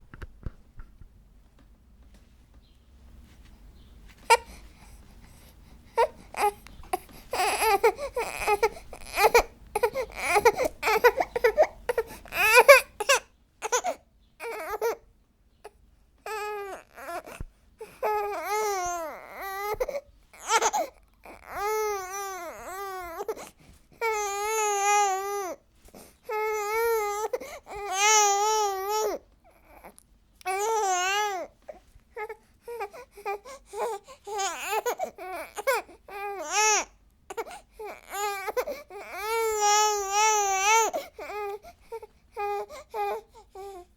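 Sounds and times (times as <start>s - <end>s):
baby crying and wailing: 6.0s - 15.0s, 16.3s - 25.6s, 26.3s - 29.9s, 30.5s - 31.6s, 32.2s - 43.9s.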